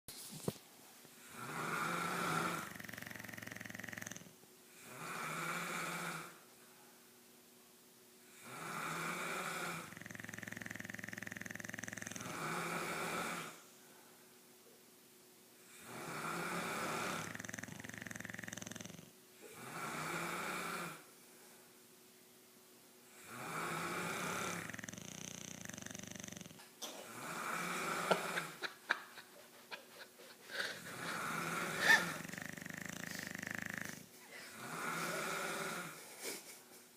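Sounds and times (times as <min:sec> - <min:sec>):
person snoring: 0:01.2 - 0:06.4, 0:08.3 - 0:13.6, 0:15.7 - 0:21.0, 0:23.1 - 0:28.7, 0:30.4 - 0:36.4
soft breath: 0:29.9 - 0:36.4.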